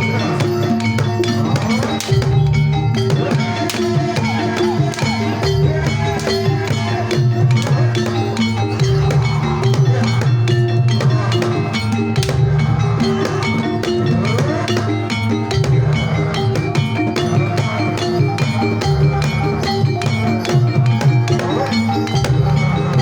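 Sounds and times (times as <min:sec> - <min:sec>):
hand drums beating: 0:00.0 - 0:23.0.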